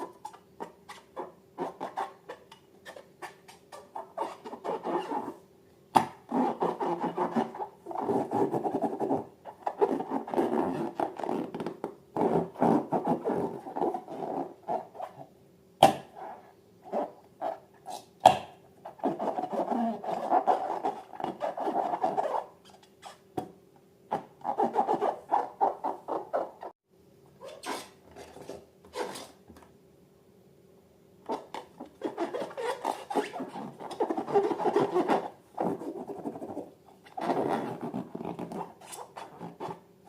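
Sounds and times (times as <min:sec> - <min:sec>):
squishy rubbing of slime: 0:31.3 - 0:39.8.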